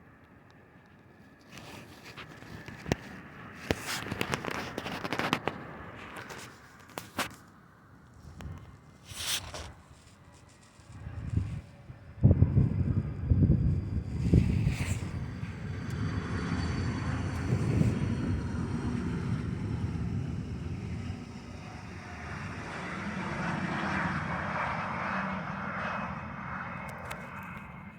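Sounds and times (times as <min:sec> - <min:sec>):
jet engine rumble: 0:01.2 - 0:27.9
thin high whine: 0:09.0 - 0:22.8.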